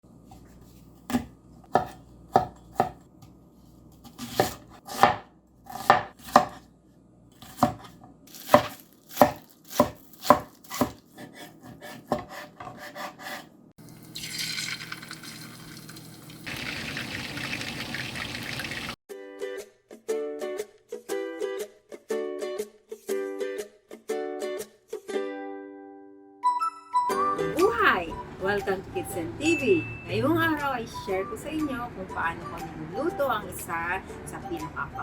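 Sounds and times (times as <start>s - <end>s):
knife chopping on cutting board: 1.0s - 3.0s, 4.0s - 6.6s, 7.4s - 13.5s.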